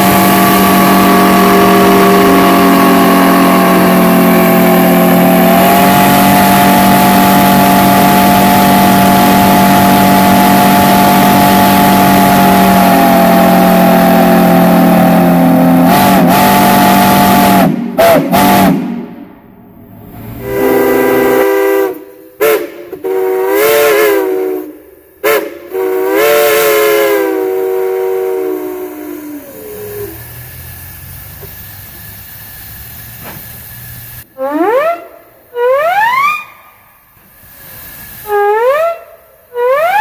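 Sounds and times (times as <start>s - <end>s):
loud steam whistle chord: 0.0s - 19.4s, 20.1s - 32.6s.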